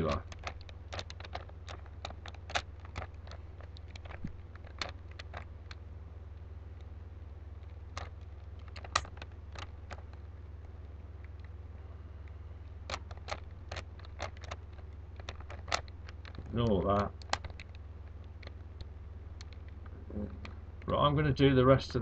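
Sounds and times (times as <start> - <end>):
plastic puzzle cube clicking: 0.0 - 5.8, 7.6 - 10.2, 12.8 - 19.8
low hum: 0.0 - 22.0.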